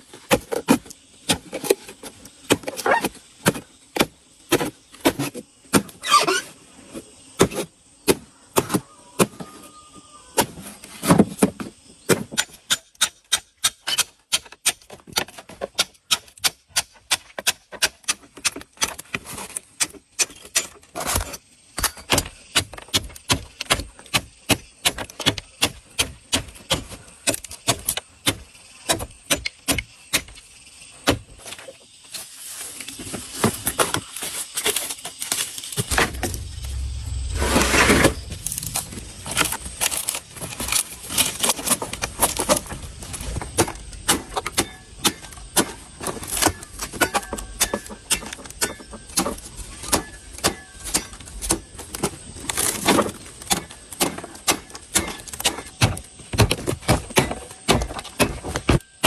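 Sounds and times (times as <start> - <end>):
rushing noise: 35.8 - 41.2.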